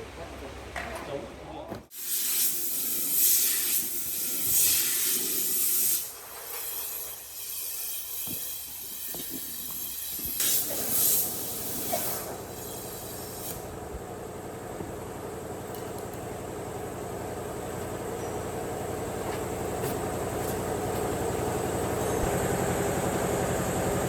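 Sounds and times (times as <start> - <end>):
compressed air hissing: 1.9 - 13.7
steady motor hum: 8.0 - 24.0.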